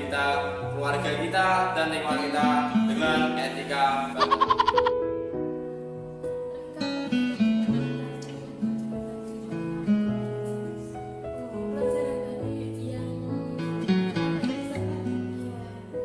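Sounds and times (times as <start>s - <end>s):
plucked acoustic guitar melody: 4.2s - 5.2s, 6.7s - 11.7s.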